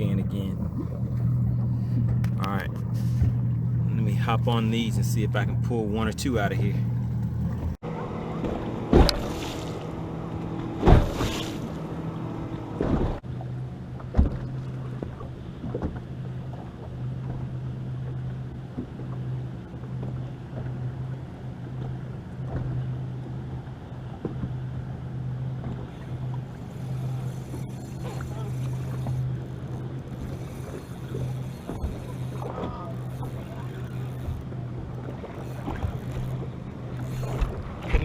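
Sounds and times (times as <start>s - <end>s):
electric trolling motor humming: 0.0s - 38.0s
knocks on boat: 8.4s - 9.6s, 10.8s - 11.6s, 14.1s - 16.0s.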